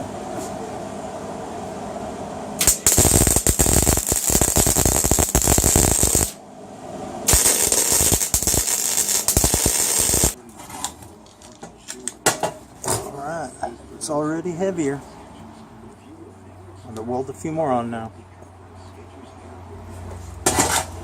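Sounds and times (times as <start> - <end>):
welding arc crackling: 2.6 - 6.4, 7.3 - 10.4.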